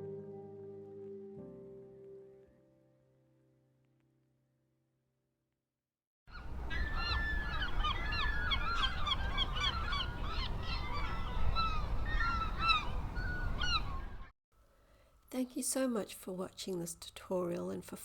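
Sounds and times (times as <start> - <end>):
gulls calling: 6.3 - 14.3.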